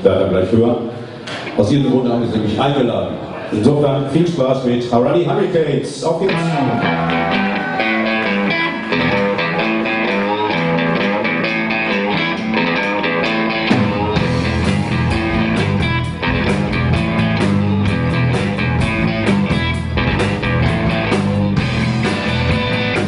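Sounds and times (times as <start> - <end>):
electric guitar: 6.3 - 23.0
live blues band playing: 6.3 - 23.0.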